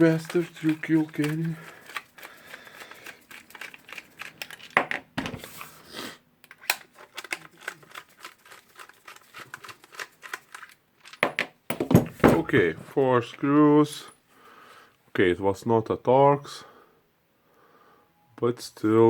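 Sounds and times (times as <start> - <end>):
hand tools and metal parts clattering: 11.0 - 12.7.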